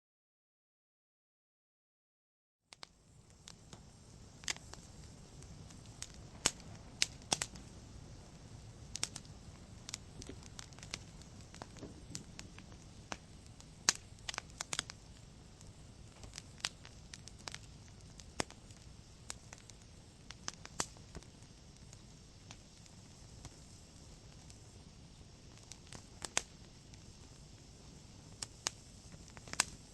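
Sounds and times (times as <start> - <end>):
wood fire crackling: 2.7 - 29.9.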